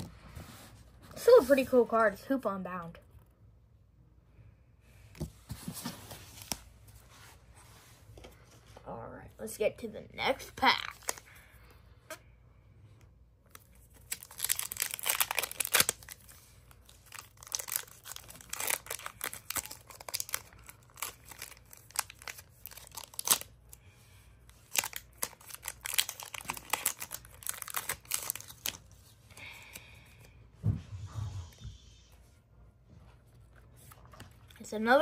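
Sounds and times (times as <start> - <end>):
foil wrapper tearing and crinkling: 13.5 - 23.6, 24.6 - 28.9.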